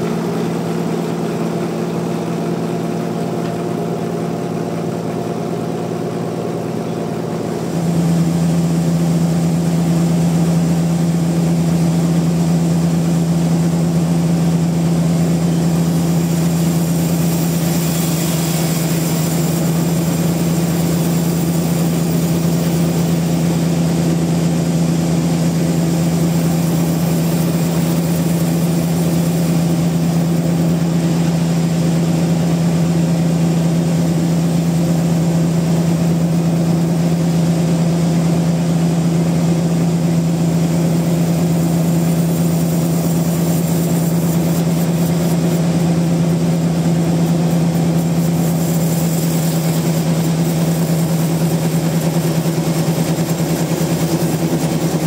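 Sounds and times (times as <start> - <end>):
sawmill machinery humming: 0.0 - 55.0.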